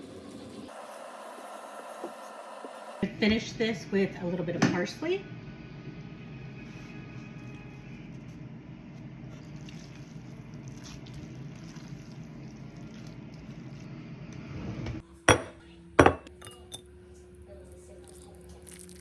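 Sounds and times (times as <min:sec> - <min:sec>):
squishy pasta in skillet: 0:09.0 - 0:14.0.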